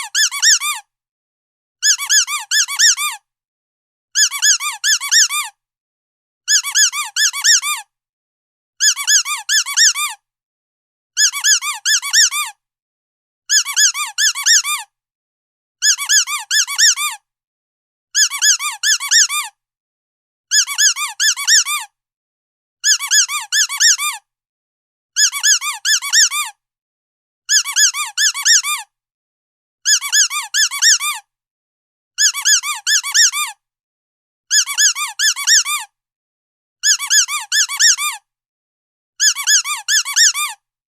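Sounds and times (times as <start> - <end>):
rubber dog toy squeaking: 0.0 - 0.9, 1.8 - 3.2, 4.2 - 5.6, 6.5 - 7.9, 8.8 - 10.2, 11.2 - 12.6, 13.5 - 14.9, 15.8 - 17.2, 18.2 - 19.6, 20.5 - 22.0, 22.8 - 24.3, 25.2 - 26.6, 27.5 - 28.9, 29.9 - 31.3, 32.2 - 33.6, 34.5 - 36.0, 36.8 - 38.3, 39.2 - 40.6.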